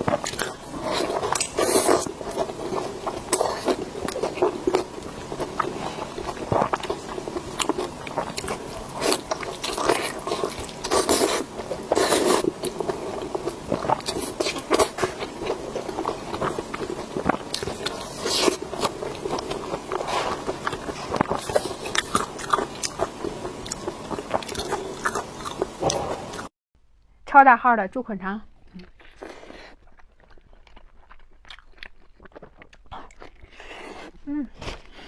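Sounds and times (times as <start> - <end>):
loud biting: 0.0 - 4.9, 23.7 - 26.5
chewing mouth clicks and smacks: 28.7 - 33.5.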